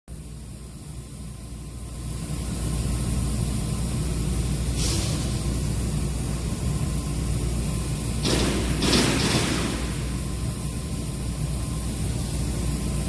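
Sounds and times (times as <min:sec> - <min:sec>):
short hiss: 0:04.7 - 0:05.4.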